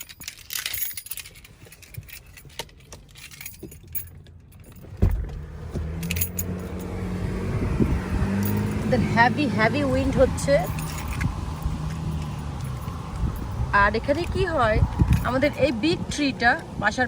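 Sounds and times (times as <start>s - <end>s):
car keys jangling: 0.0s - 16.3s
low thump: 4.9s - 5.9s
wind on microphone: 7.2s - 17.0s.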